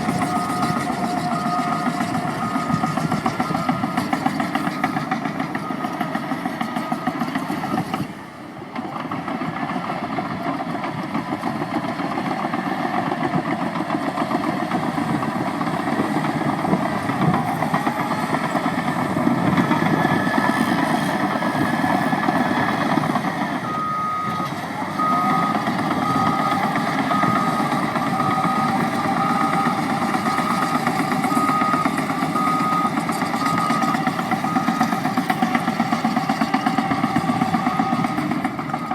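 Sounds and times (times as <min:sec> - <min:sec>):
reversing alarm beeps: 0:00.0 - 0:08.0, 0:15.8 - 0:38.9
track loader diesel engine: 0:00.0 - 0:38.9.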